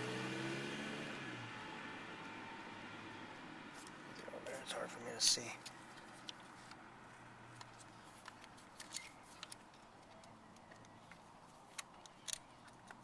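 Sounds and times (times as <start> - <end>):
small parts clicking and tapping: 7.6 - 13.0.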